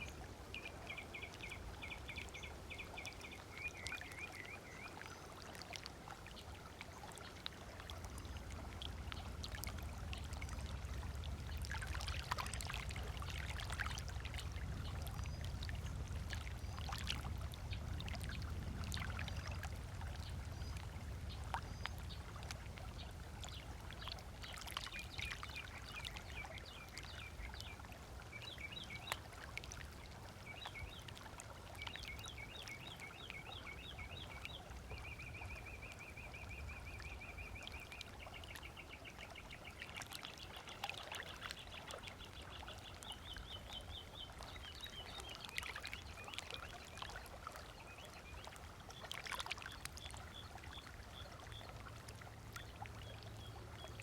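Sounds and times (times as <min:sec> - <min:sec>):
small waves lapping on sand: 0:00.0 - 0:54.0
songbirds chirping: 0:30.4 - 0:54.0.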